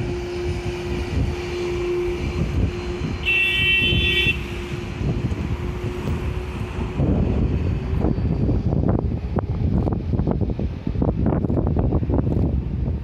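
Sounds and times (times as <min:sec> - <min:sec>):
wind buffeting microphone: 0:00.0 - 0:13.0
vehicle horn: 0:01.4 - 0:05.1.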